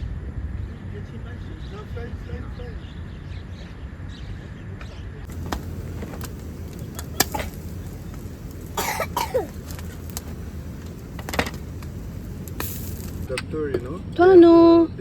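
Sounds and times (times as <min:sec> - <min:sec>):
steady low rumble: 0:05.3 - 0:15.0
person coughing: 0:08.8 - 0:09.5.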